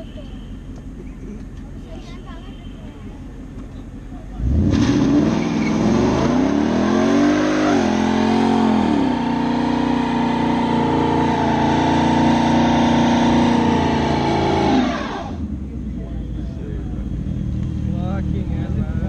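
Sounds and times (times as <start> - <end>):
motorcycle accelerating hard: 4.3 - 15.8.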